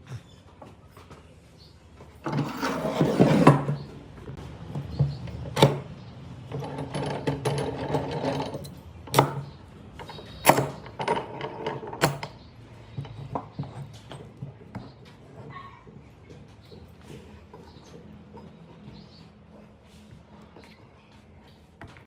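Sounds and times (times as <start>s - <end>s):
knocks and clicks on wood: 9.1s - 10.9s.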